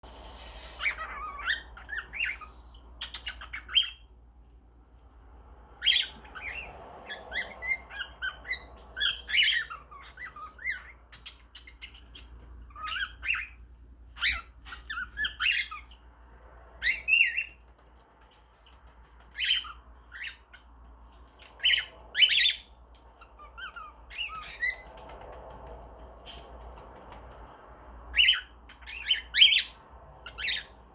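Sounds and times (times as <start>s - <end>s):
bird kissing sounds: 0.1s - 1.1s
cockatiel chattering and chirping: 0.1s - 4.1s, 5.8s - 16.0s, 16.8s - 20.8s, 21.4s - 25.6s, 28.1s - 30.8s.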